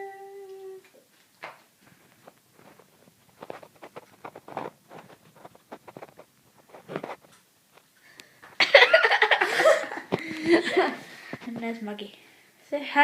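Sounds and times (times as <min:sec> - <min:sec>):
handling clicks and rustles: 0:01.1 - 0:08.0.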